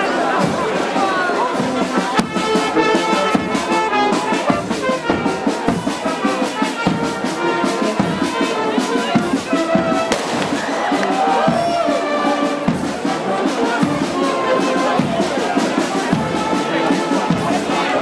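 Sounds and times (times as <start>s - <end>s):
brass band horns playing melody: 0.0s - 18.0s
sharp percussive hits: 2.2s - 2.8s.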